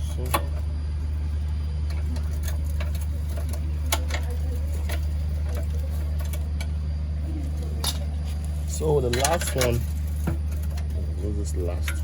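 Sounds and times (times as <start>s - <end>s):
steady low hum: 0.0s - 12.0s
spanner clicking on bolts: 9.0s - 10.9s.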